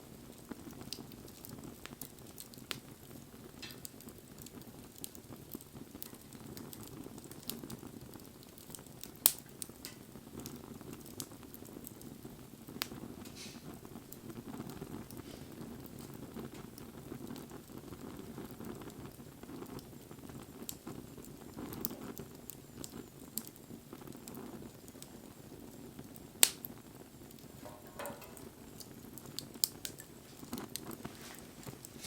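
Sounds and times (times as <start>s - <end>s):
wood fire crackling: 0.0s - 32.0s
loud pop from fire: 3.5s - 5.2s, 8.5s - 11.3s, 26.4s - 26.7s, 27.3s - 31.0s.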